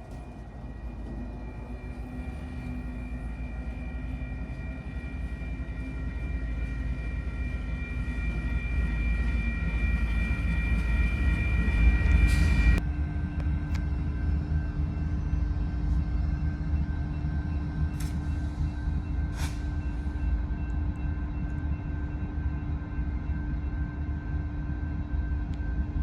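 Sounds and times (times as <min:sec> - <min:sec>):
steady high-pitched tones: 0:00.0 - 0:26.0
train rumble: 0:00.0 - 0:26.0.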